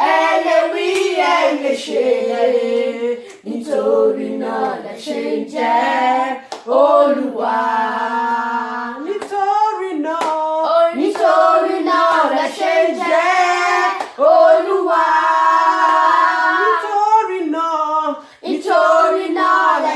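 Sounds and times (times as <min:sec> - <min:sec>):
women and children singing: 0:00.0 - 0:19.9
hand claps: 0:00.5 - 0:01.2, 0:06.5 - 0:06.7, 0:10.2 - 0:12.8, 0:14.0 - 0:14.2.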